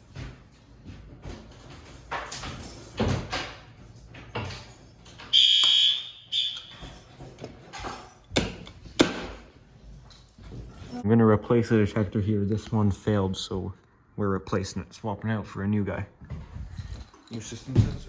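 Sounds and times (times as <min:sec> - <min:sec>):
handling knocks and rattles: 0:00.0 - 0:05.4, 0:06.0 - 0:11.0, 0:16.4 - 0:18.0
high-pitched electronic beep: 0:05.4 - 0:06.8.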